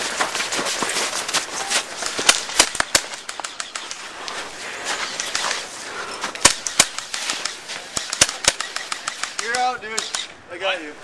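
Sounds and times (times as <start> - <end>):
rustling background: 0.0 - 11.0
airsoft gun shots: 6.4 - 10.3.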